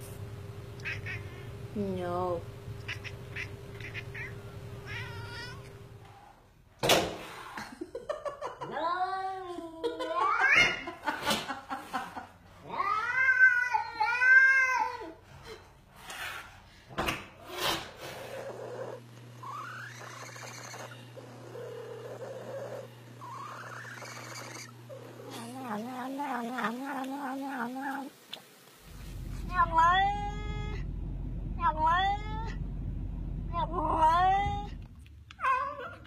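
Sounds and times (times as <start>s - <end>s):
cats meowing and yowling: 2.9s - 5.7s, 12.7s - 15.2s, 35.4s - 36.0s.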